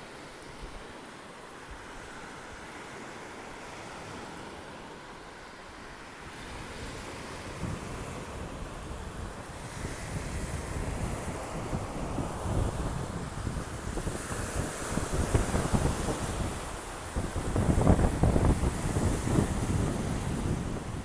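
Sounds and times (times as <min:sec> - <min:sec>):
waves washing onto beach: 0:00.0 - 0:21.0
wind buffeting microphone: 0:06.5 - 0:21.0.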